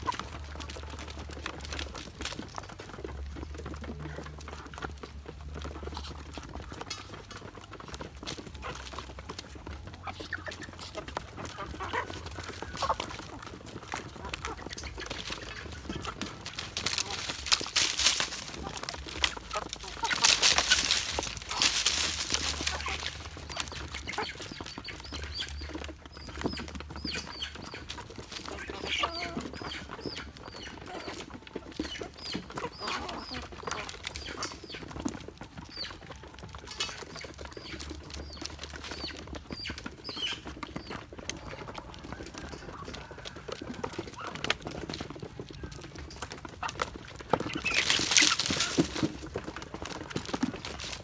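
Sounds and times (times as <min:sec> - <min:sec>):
ducks and chickens calling: 0:00.0 - 0:51.0
loud rustle: 0:14.7 - 0:24.4, 0:47.5 - 0:49.3.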